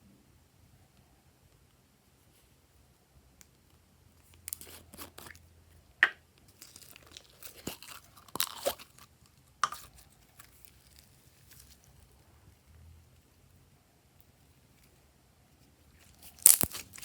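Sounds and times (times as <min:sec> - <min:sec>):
slime crackling and popping: 0:06.5 - 0:09.0, 0:16.0 - 0:17.0.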